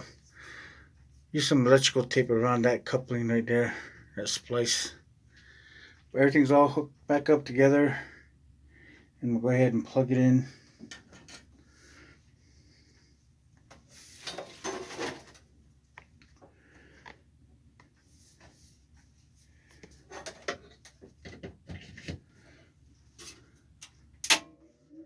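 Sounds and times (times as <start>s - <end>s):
loud sharp click: 24.2s - 24.5s.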